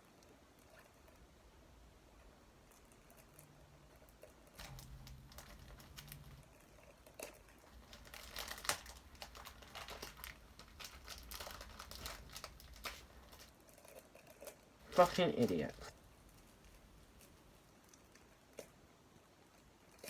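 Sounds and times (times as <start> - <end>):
packaging crinkling: 4.6 - 6.5, 7.2 - 13.6, 14.8 - 17.4.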